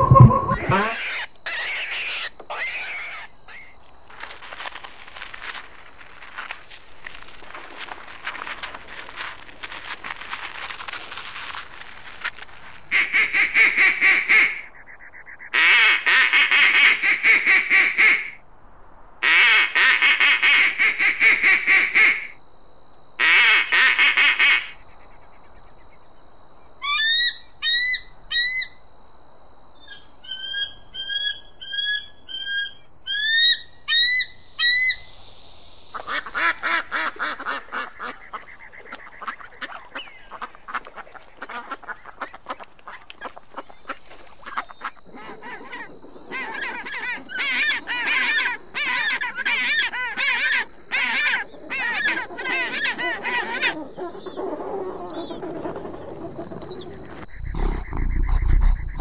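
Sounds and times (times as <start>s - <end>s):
short rising bird notes: 0.0s - 1.0s
birds calling harshly: 0.0s - 3.8s, 35.8s - 59.0s.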